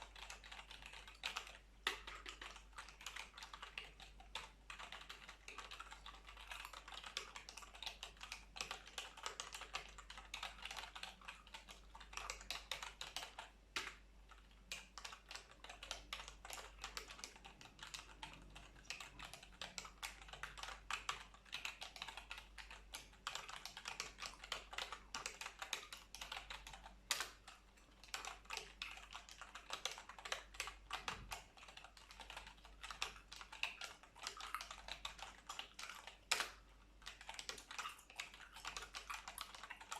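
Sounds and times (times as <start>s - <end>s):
keyboard typing clicks: 14.7s - 39.9s.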